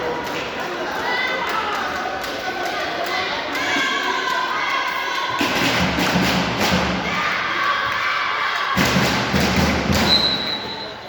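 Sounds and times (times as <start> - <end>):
crowd cheering and shouting: 0.0 - 5.7, 6.7 - 9.4.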